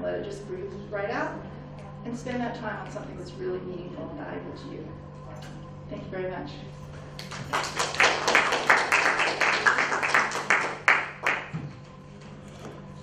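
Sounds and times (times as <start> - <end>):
audience clapping: 7.2 - 11.9.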